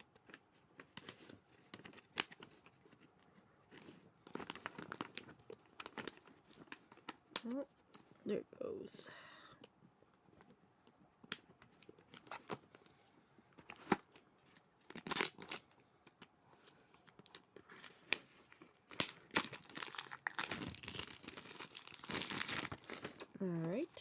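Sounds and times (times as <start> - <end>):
plastic wrapper tearing: 4.2 - 7.6, 14.8 - 15.7, 17.1 - 23.3.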